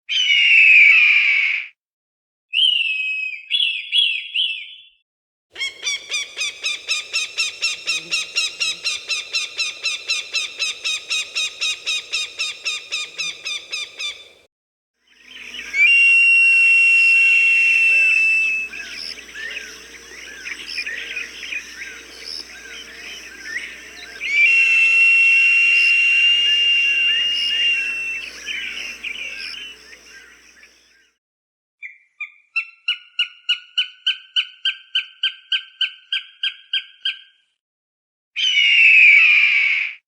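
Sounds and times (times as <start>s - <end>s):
long held whistle: 5.6s - 14.2s, 15.1s - 30.7s
dense bird chirping: 5.6s - 14.4s, 15.1s - 16.2s, 17.2s - 30.9s
sharp repeated hawk calls: 5.6s - 14.4s, 15.2s - 30.8s
loud falling hawk scream: 15.4s - 30.2s.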